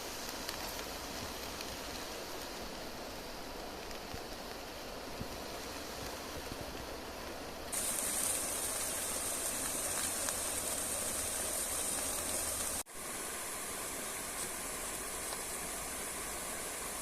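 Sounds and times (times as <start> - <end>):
river water rushing: 7.7 - 17.0.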